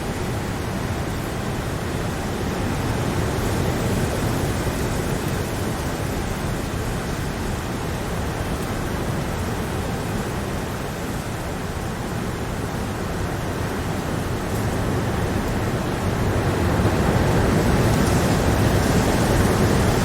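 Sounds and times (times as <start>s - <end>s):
heavy rain: 0.0s - 20.0s.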